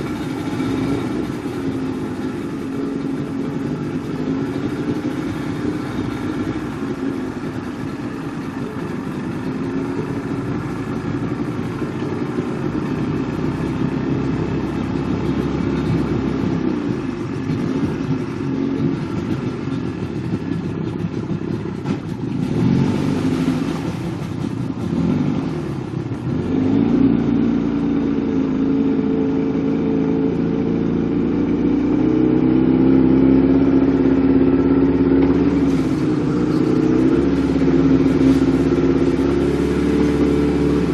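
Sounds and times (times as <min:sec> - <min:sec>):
motorboat engine running: 0:00.0 - 0:40.9
rushing noise: 0:35.4 - 0:40.9.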